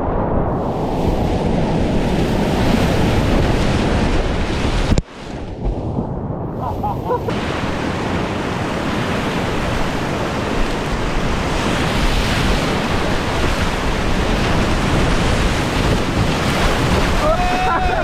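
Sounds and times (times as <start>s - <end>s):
wind buffeting microphone: 0.0s - 18.0s
whitewater rapids rushing: 12.1s - 18.0s.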